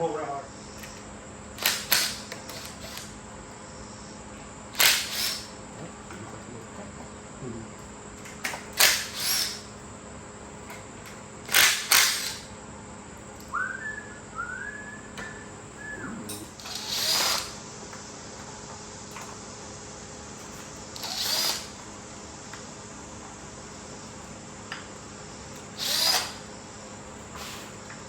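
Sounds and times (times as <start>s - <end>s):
tool hissing bursts: 1.6s - 5.6s, 8.7s - 9.7s, 11.5s - 12.6s, 14.8s - 17.8s, 20.4s - 21.9s, 25.4s - 27.9s
person whistling: 13.5s - 16.3s.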